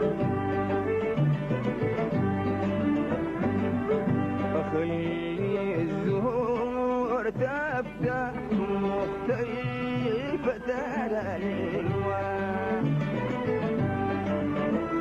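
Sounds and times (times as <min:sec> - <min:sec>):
violins playing gliding melody: 0:00.0 - 0:05.8, 0:11.2 - 0:15.0
band accompaniment: 0:00.0 - 0:15.0.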